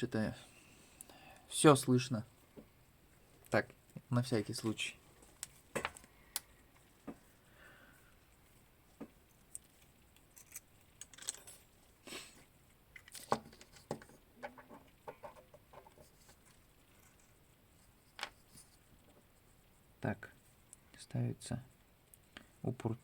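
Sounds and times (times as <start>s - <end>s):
small metal parts clicking: 9.5s - 11.7s.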